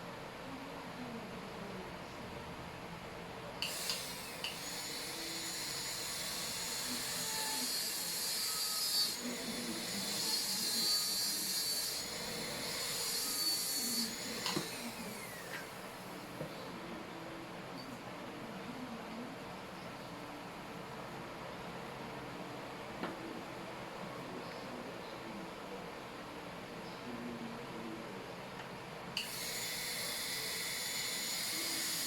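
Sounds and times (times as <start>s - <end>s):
dental drill whining: 3.6s - 16.0s, 29.2s - 32.0s.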